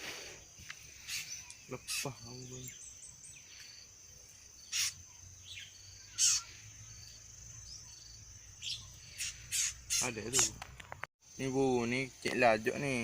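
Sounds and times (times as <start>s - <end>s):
insect chorus drone: 0.0s - 13.0s
sharp bird calls: 0.3s - 10.6s.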